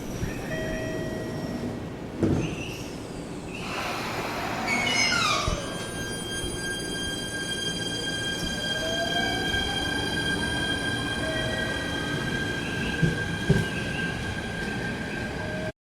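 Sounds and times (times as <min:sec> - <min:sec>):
train wheels rumbling on track: 0:03.6 - 0:15.7.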